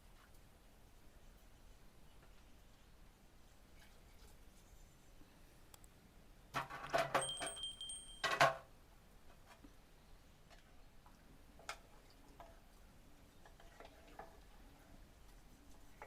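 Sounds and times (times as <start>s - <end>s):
clattering knocks and clinks: 6.9s - 8.6s
thin high ringing tone: 7.2s - 8.4s.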